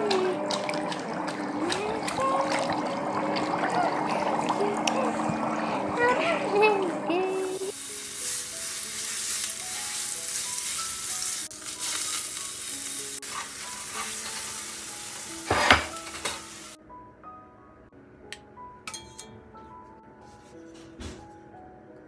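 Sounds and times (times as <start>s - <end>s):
soft background music: 0.0s - 22.0s
food sizzling in a frying pan: 7.3s - 16.8s.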